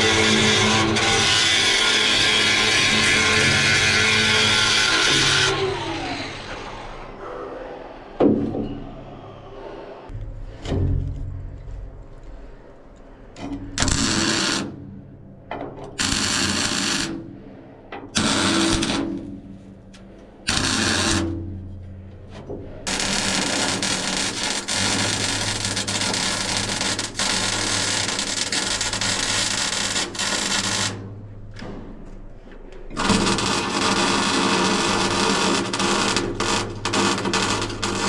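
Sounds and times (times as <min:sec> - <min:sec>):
welding machine humming: 0:00.0 - 0:05.7, 0:13.8 - 0:14.7, 0:16.0 - 0:17.2, 0:18.2 - 0:19.4, 0:20.4 - 0:21.4, 0:22.9 - 0:31.0, 0:33.0 - 0:38.0
welding arc crackling and hissing: 0:13.8 - 0:14.7, 0:16.0 - 0:17.2, 0:18.2 - 0:19.2, 0:20.5 - 0:21.3, 0:22.9 - 0:31.0, 0:33.0 - 0:38.0.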